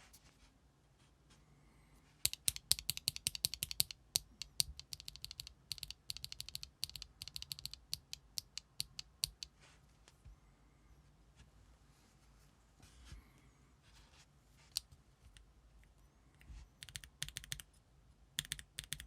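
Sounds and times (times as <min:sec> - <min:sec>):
fast typing on mechanical keyboard: 0:02.3 - 0:08.2, 0:16.8 - 0:17.6, 0:18.4 - 0:19.0.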